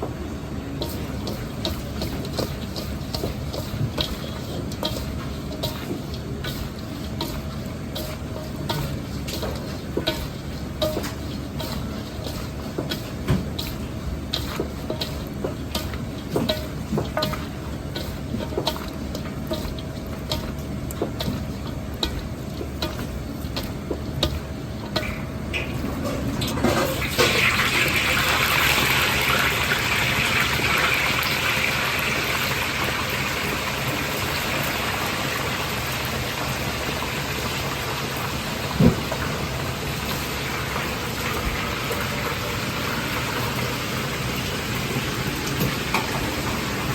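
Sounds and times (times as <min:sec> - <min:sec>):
kitchen clatter of knocks: 0:38.7 - 0:39.3.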